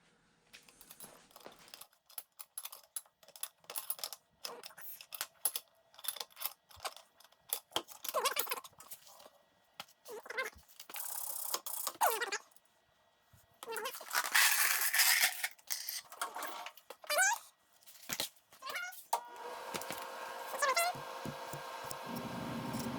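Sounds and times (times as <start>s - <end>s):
metal parts clinking and rattling: 0.6s - 9.3s, 13.7s - 17.2s.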